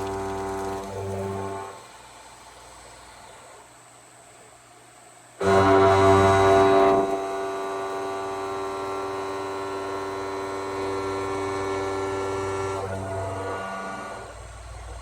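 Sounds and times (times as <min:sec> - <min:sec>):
milling machine high-pitched whine: 0:05.4 - 0:15.0.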